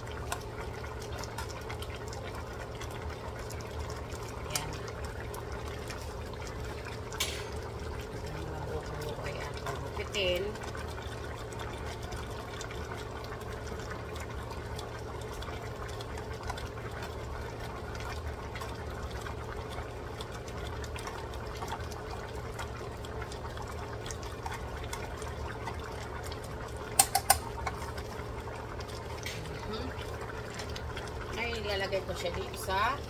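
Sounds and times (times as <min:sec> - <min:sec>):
pot simmering: 0:00.0 - 0:33.0.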